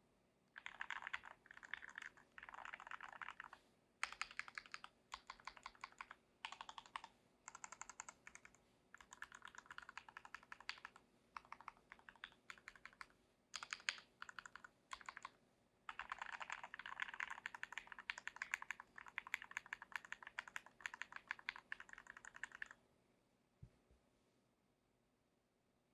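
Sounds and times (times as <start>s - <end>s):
mechanical keyboard typing: 0.6s - 22.8s.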